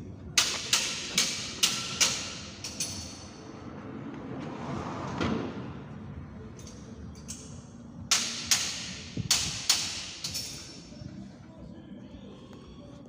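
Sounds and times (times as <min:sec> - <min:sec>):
metal knocks and clanks: 0:00.4 - 0:03.4.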